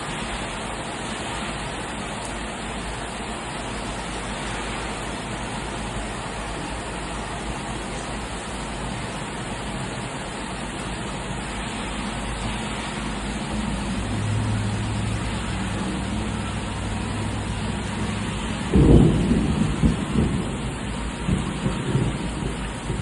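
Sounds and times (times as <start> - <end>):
steady rain falling: 0.0 - 23.0
low thunder rumbles: 17.0 - 23.0
thunder clap: 18.6 - 23.0.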